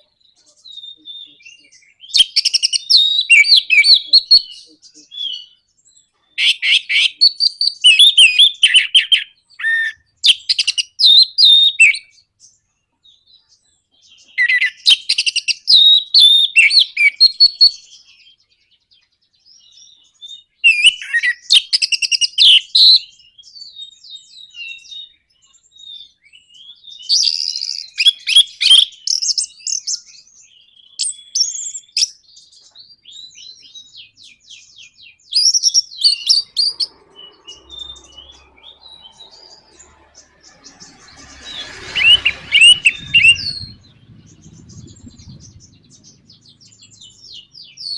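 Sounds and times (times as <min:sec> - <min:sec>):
thrush singing chattering song: 0:34.3 - 0:47.9
low noise: 0:36.2 - 0:47.9.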